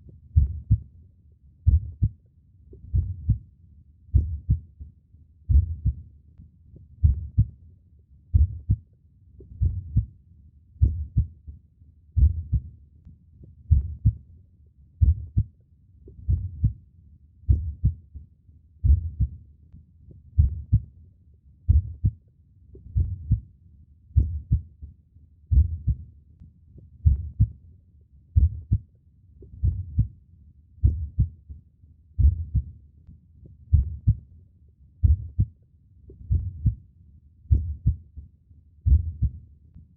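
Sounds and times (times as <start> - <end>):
human heartbeat: 0.3 - 0.9, 1.6 - 3.5, 4.1 - 6.1, 6.8 - 7.6, 8.3 - 10.2, 10.8 - 11.5, 12.2 - 12.8, 13.4 - 14.3, 15.0 - 15.5, 16.1 - 16.8, 17.5 - 18.2, 18.8 - 19.4, 20.1 - 20.9, 21.7 - 23.5, 24.1 - 24.8, 25.5 - 26.1, 26.8 - 27.6, 28.4 - 30.2, 30.8 - 31.6, 32.2 - 32.8, 33.4 - 34.3, 35.0 - 36.8, 37.5 - 39.9.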